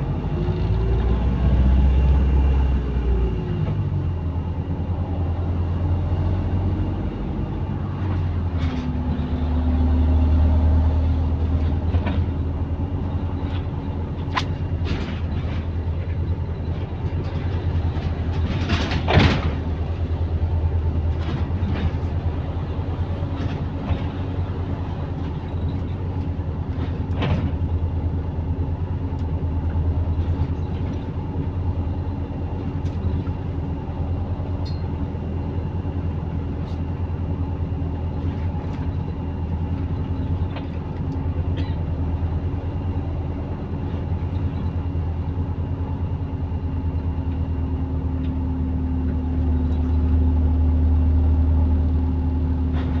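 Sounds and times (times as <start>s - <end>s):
bus engine humming: 0.0s - 53.0s
loud sudden clatter: 18.0s - 19.8s.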